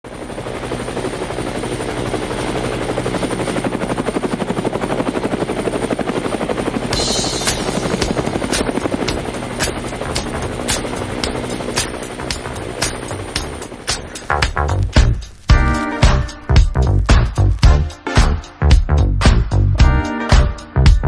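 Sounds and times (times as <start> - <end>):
helicopter rotor chop: 0.1 - 17.9
sharp hits: 6.9 - 18.4.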